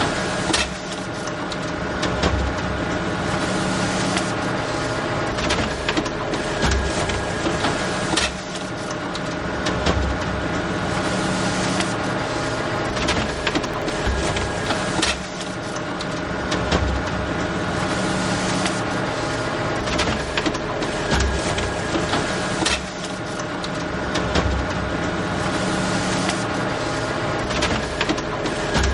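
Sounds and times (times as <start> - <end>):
photocopier humming: 11.2 - 16.2.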